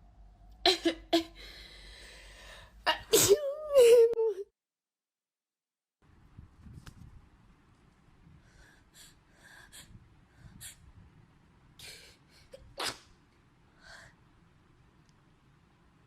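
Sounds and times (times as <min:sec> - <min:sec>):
person sneezing: 0:02.9 - 0:03.6, 0:12.8 - 0:13.1.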